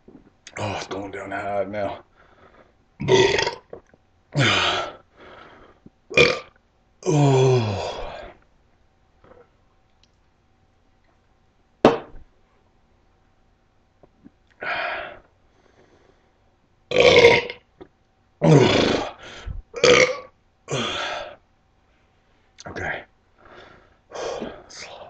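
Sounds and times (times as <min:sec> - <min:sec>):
man belching: 0:03.0 - 0:03.8, 0:06.1 - 0:08.1, 0:16.9 - 0:17.6, 0:18.4 - 0:19.2, 0:19.8 - 0:21.0
sharp knock: 0:11.8 - 0:12.2.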